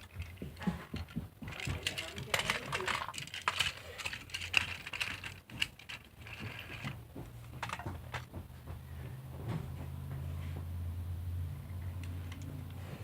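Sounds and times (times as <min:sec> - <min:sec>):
toy trains clicking and clattering: 0:00.0 - 0:08.3, 0:11.8 - 0:13.0.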